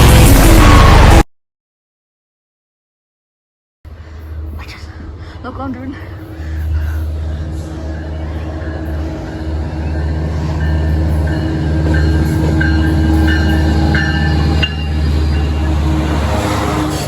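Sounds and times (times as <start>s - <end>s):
train rumbling: 0.0s - 1.2s, 3.9s - 17.0s.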